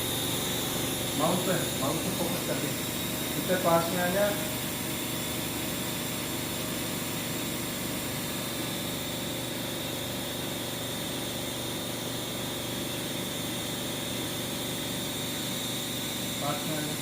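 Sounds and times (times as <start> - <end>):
thin high whine: 0.0 - 4.8
machine motor hum: 0.0 - 17.0.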